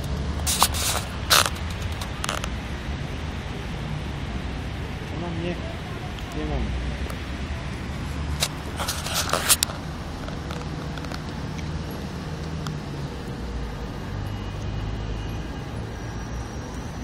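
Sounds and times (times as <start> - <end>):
sharp rustling clicks: 0.0 - 2.6.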